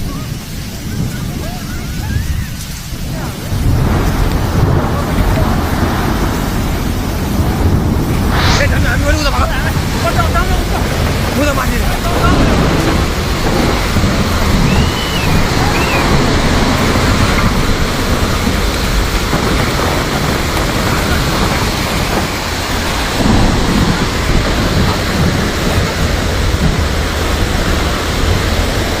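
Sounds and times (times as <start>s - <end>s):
floodwater rushing: 0.0s - 29.0s.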